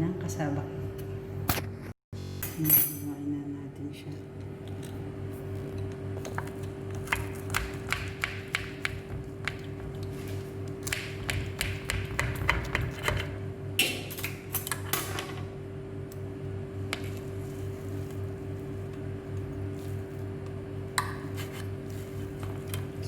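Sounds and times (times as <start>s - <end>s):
utensil clicking on crust: 4.5s - 13.3s.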